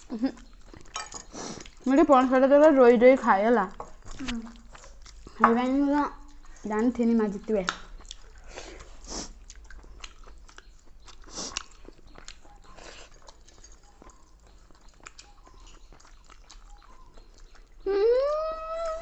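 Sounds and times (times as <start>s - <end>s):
people chewing: 0.0s - 19.0s
wet mouth clicks: 4.0s - 5.4s, 7.4s - 19.0s.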